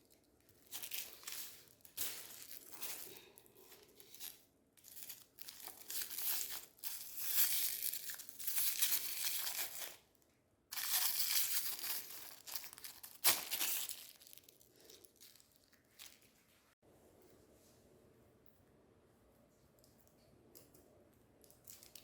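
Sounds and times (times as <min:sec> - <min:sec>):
plastic wrappers crackling: 0:00.0 - 0:10.0, 0:10.7 - 0:16.4.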